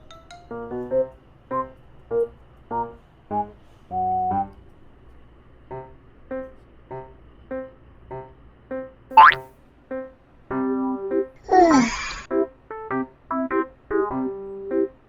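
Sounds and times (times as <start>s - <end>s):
comic keyboard tune: 9.2s - 9.4s.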